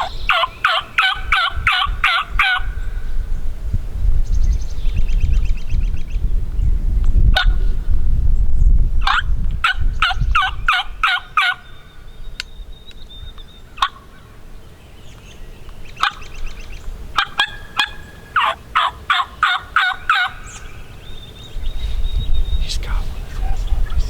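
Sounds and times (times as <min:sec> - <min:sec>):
turkey yelping: 0:00.0 - 0:02.7, 0:09.0 - 0:11.8, 0:13.8 - 0:14.1, 0:17.2 - 0:20.7
wind rumble on microphone: 0:00.0 - 0:13.8, 0:20.4 - 0:24.0.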